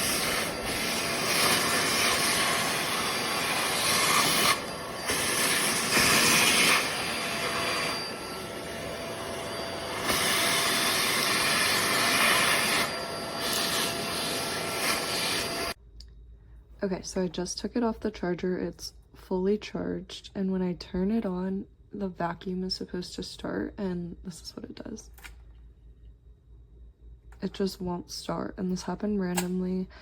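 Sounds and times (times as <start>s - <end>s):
vacuum cleaner motor whine: 0.0s - 15.8s.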